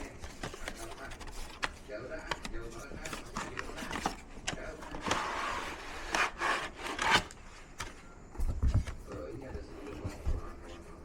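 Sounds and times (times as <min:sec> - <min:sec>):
packaging rubbing and scraping: 0:00.0 - 0:07.5.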